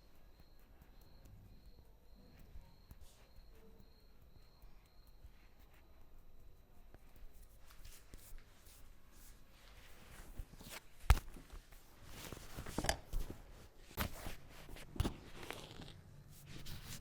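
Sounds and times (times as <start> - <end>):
hands rubbing hair and skin: 5.4 - 17.0.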